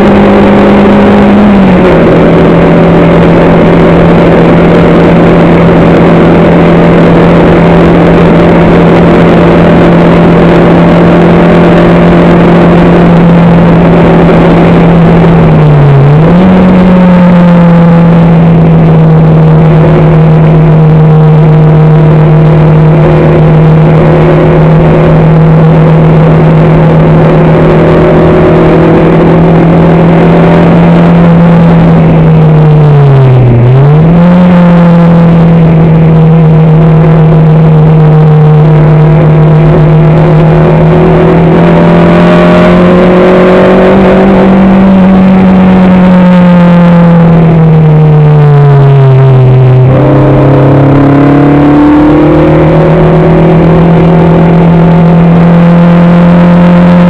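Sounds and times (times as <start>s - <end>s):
vehicle engine at speed: 0.0s - 57.0s.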